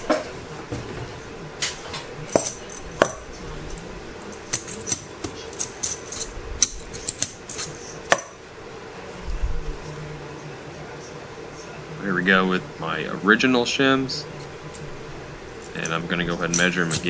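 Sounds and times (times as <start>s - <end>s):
metal tools clicking and clinking: 2.3s - 8.3s, 15.6s - 17.0s.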